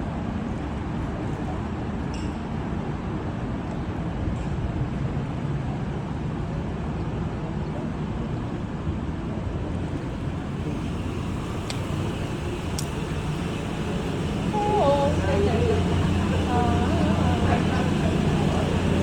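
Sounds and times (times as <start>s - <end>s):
motor rumbling: 9.7s - 19.0s.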